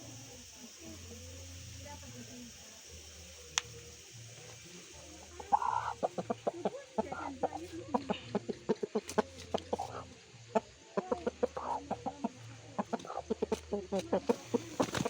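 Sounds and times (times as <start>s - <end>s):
sharp clicks: 0.0s - 7.5s
rooster clucking: 5.4s - 15.0s.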